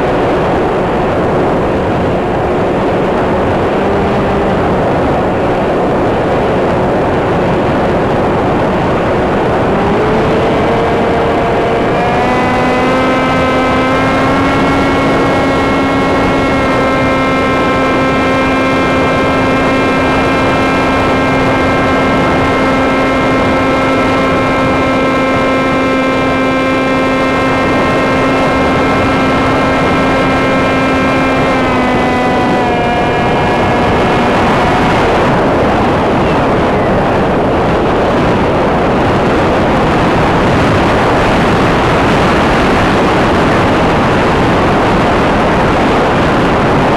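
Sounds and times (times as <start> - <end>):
electric motor and propeller whining: 0.0 - 46.9
wind rushing: 0.0 - 46.9.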